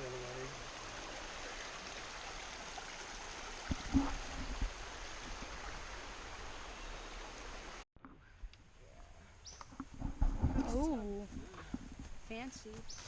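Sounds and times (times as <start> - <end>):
mountain stream flowing: 0.0 - 7.8.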